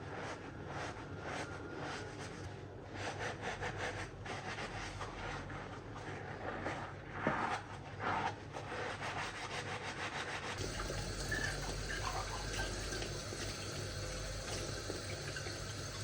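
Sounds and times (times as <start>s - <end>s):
rubbing and scraping: 0.1s - 12.0s
water running from tap: 10.6s - 16.0s.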